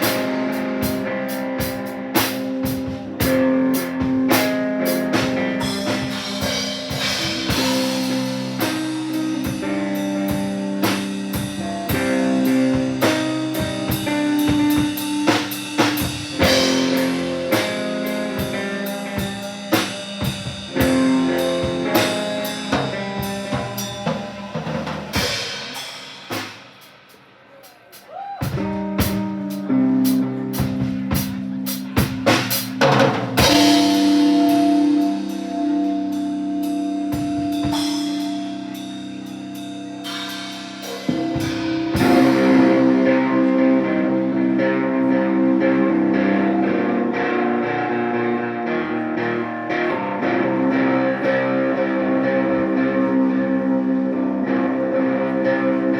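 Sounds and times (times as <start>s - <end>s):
sustained guitar chords: 0.0s - 26.4s, 28.6s - 55.9s
drum kit pounding: 0.0s - 44.3s
live instrumental band: 0.0s - 55.9s.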